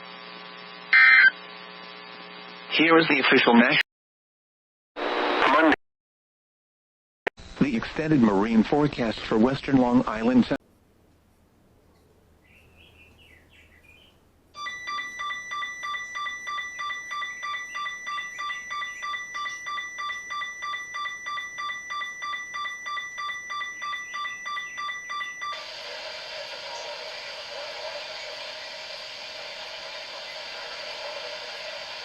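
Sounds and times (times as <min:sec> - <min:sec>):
two-tone electronic alarm beeping: 0:14.6 - 0:25.6.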